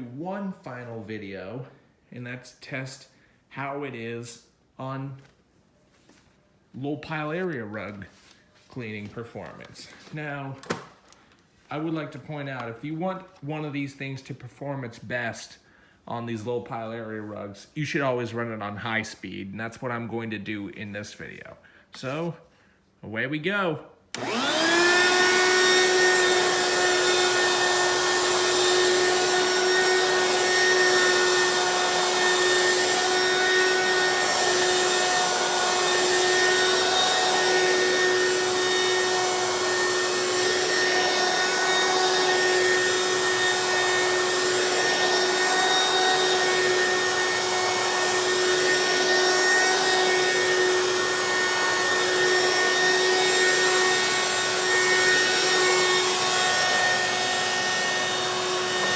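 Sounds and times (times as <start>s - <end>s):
vacuum cleaner motor whining: 24.1s - 58.9s.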